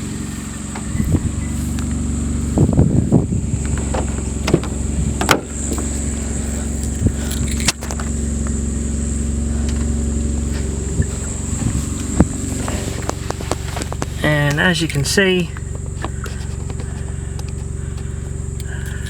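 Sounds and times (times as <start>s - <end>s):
car engine idling: 0.0s - 19.0s
sharp clicks and knocks: 3.6s - 6.0s, 6.6s - 8.6s, 13.0s - 19.0s.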